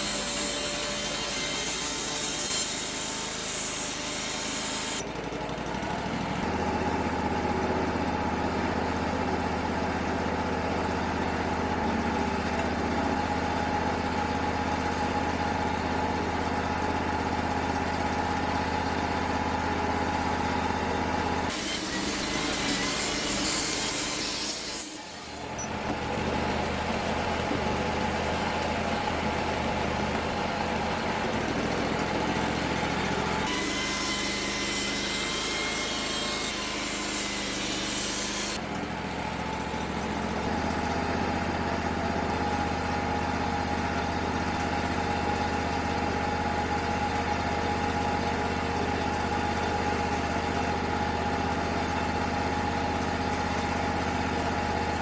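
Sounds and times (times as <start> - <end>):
engine running steadily: 5.0 - 21.6, 25.3 - 33.6, 38.6 - 55.0.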